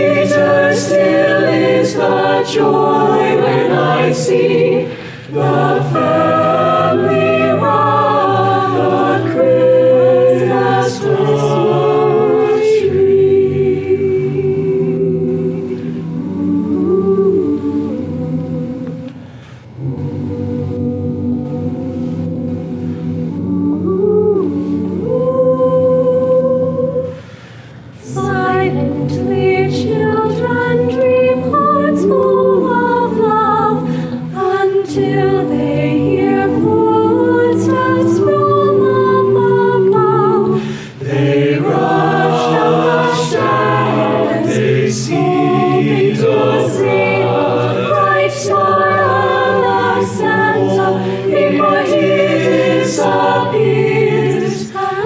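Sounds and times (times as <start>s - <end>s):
choir singing a cappella: 0.0s - 55.0s
choir breath intake: 4.6s - 5.6s, 15.6s - 16.3s, 19.1s - 20.0s, 22.0s - 23.2s, 27.0s - 28.0s, 33.8s - 34.4s, 40.4s - 43.0s, 50.8s - 51.8s.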